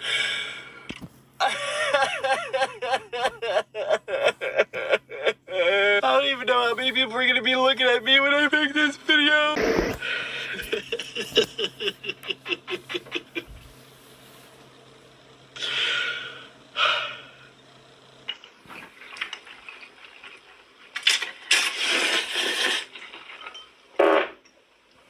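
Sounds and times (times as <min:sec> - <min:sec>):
dishes and packaging rustling: 0:18.8 - 0:24.0.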